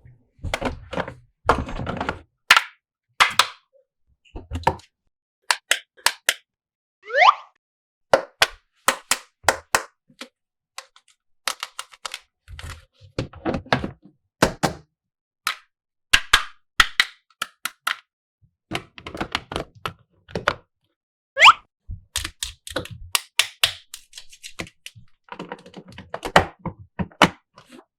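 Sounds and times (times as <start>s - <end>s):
plastic toy clicks and taps: 5.5s - 6.4s, 8.2s - 12.2s, 15.5s - 18.1s, 22.1s - 25.0s.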